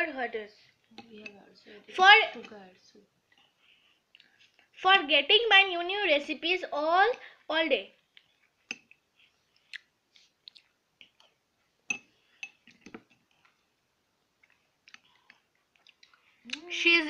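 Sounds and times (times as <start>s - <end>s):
person chewing crunchy sweet: 8.0s - 11.4s, 14.4s - 16.6s.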